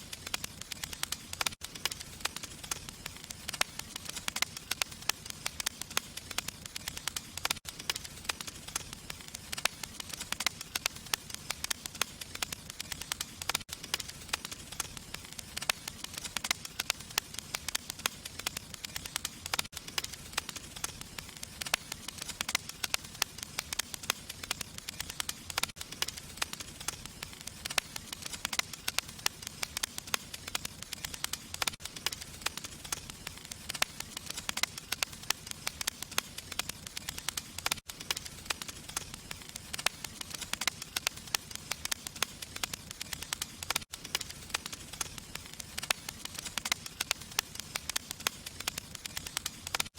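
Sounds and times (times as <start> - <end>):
fire crackling and hissing: 0.0 - 49.9.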